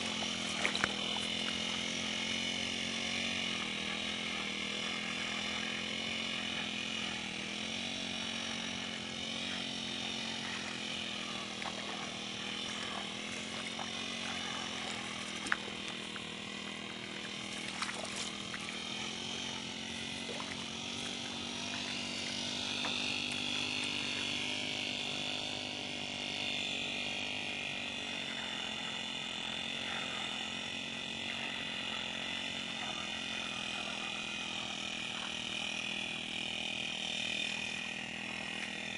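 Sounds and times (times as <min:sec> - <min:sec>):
brush cutter engine running: 0:00.0 - 0:38.9.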